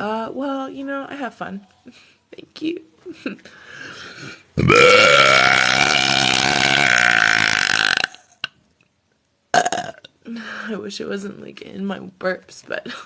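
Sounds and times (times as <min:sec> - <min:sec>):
woman burping loudly: 0:04.6 - 0:08.5, 0:09.5 - 0:10.1.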